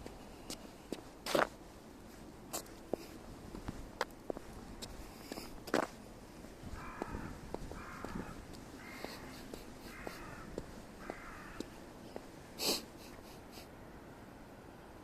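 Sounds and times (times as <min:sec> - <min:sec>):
crow cawing: 0:06.7 - 0:11.8.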